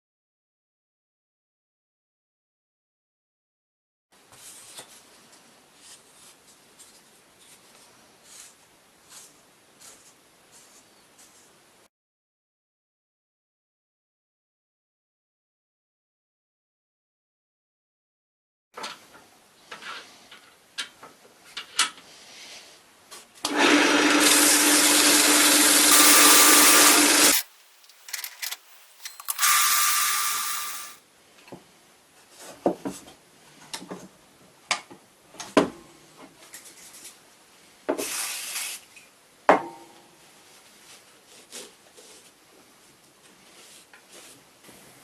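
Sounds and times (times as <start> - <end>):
power tool cutting wood: 23.5 - 31.0.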